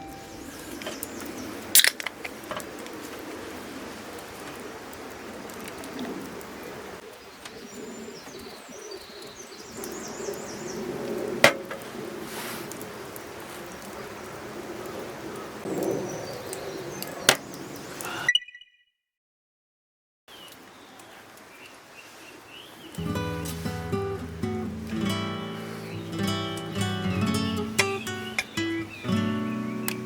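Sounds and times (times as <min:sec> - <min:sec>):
small birds chirping: 0:00.0 - 0:02.0, 0:07.0 - 0:11.0, 0:14.8 - 0:18.8, 0:20.3 - 0:30.0.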